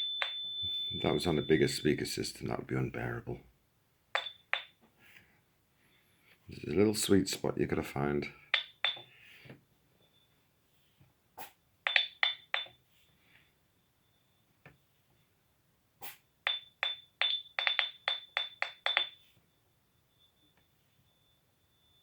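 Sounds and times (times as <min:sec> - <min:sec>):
faint high electronic tone: 0:00.0 - 0:03.4, 0:18.9 - 0:22.0.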